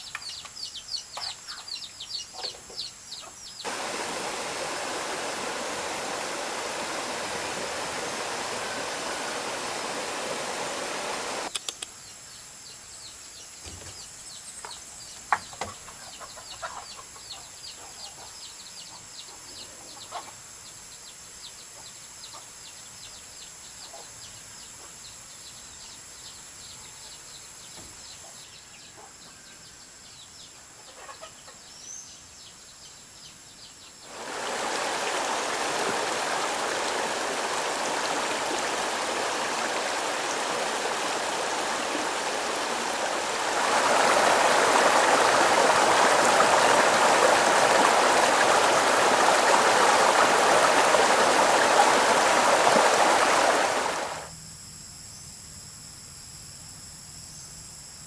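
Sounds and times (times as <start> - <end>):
bird chirps: 0.0 - 3.7
crickets chirring: 0.0 - 58.0
running water rushing: 3.6 - 11.5, 34.0 - 54.3.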